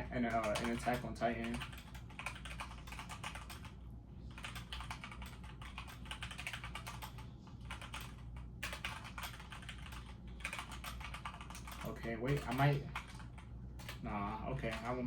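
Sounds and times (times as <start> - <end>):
fast typing on keyboard: 0.1 - 15.0.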